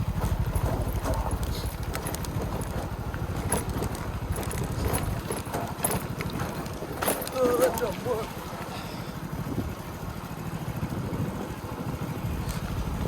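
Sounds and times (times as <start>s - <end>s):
knocks and rattles of bike jolting: 0.0s - 8.6s
motorcycle engine running: 0.0s - 13.0s.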